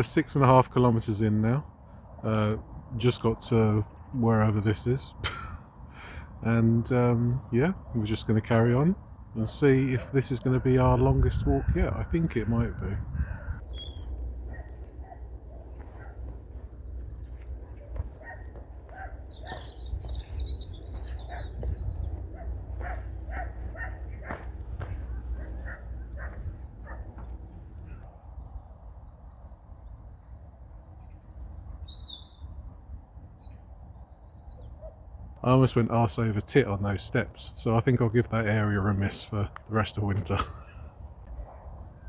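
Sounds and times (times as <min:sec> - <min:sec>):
songbirds singing trills: 0:00.0 - 0:42.0
steady low rumble: 0:10.7 - 0:28.1
footsteps: 0:14.1 - 0:27.4.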